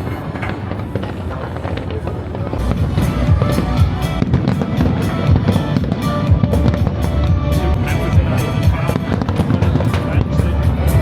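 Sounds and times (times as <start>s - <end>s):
fireworks booming and crackling: 0.0s - 11.0s
music: 2.5s - 11.0s.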